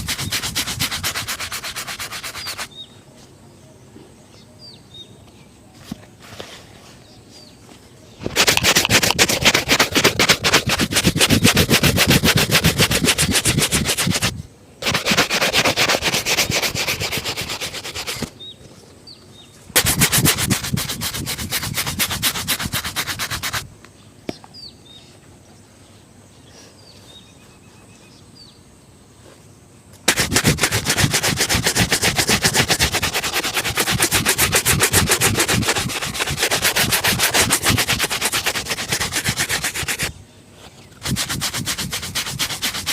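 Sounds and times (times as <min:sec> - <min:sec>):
brush scrubbing a shoe: 0:00.0 - 0:02.7, 0:08.2 - 0:18.3, 0:19.8 - 0:23.6, 0:30.0 - 0:40.1, 0:41.0 - 0:42.9.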